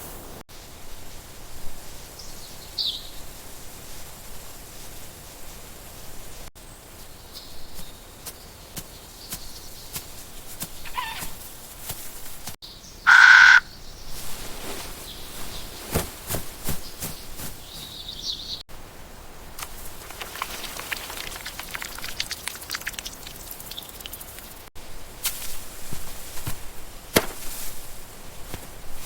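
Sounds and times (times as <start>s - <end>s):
bird calls: 6.6s - 11.5s, 12.6s - 18.6s, 19.6s - 24.7s
harsh bird call: 10.8s - 11.4s, 12.9s - 13.8s.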